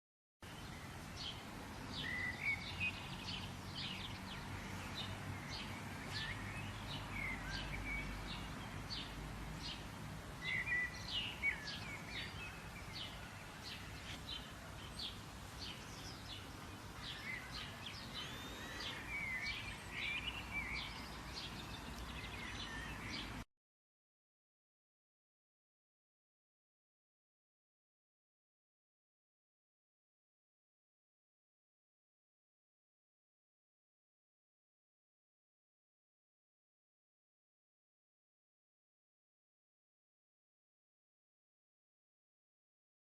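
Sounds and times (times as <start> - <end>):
birds chirping: 0.4 - 23.4
steady hiss and low rumble: 0.4 - 23.4.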